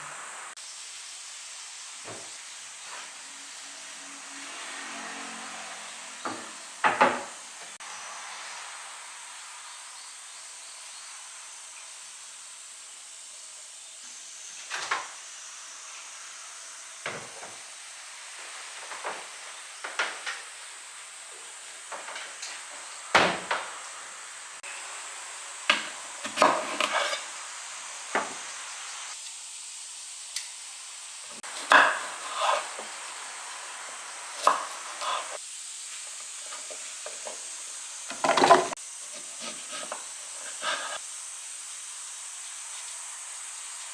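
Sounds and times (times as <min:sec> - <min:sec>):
steady cooking hiss: 0:00.0 - 0:05.0, 0:05.6 - 0:43.9
utensils clattering on cookware: 0:38.1 - 0:41.0.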